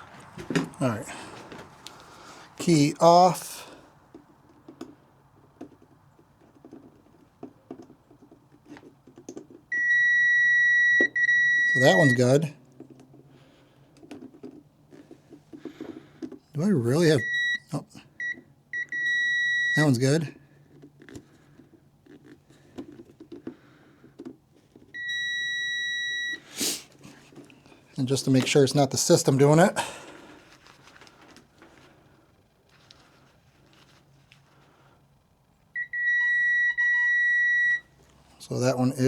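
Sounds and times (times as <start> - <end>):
multimeter continuity beep: 9.7 - 12.3, 17.2 - 19.9, 25.0 - 26.4, 35.8 - 37.9.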